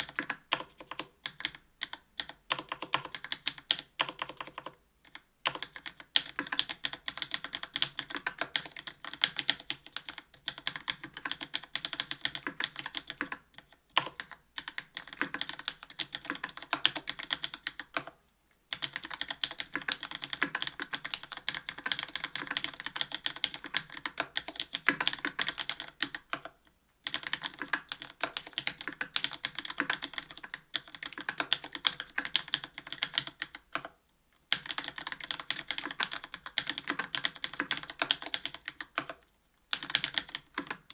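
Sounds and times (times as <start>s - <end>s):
fast mechanical keyboard typing: 0.0s - 40.9s.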